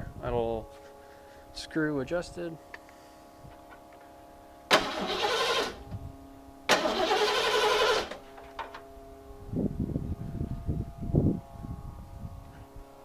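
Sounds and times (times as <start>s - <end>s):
engine firing unevenly: 4.7s - 6.0s
starter motor cranking: 4.7s - 6.0s, 6.7s - 8.2s.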